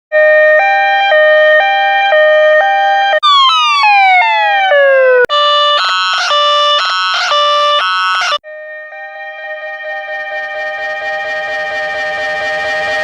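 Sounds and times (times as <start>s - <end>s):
ambulance siren: 0.1s - 13.0s.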